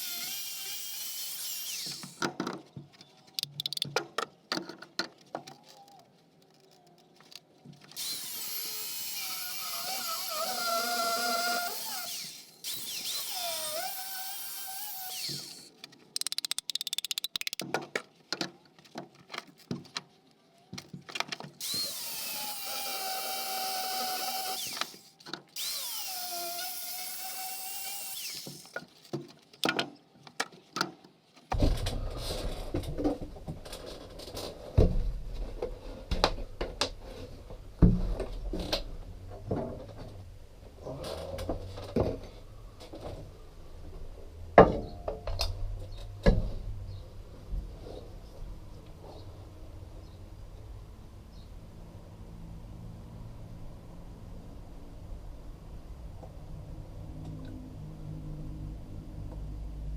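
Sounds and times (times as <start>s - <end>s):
power tool motor whining: 0.0s - 2.2s, 8.0s - 17.6s, 21.6s - 28.7s.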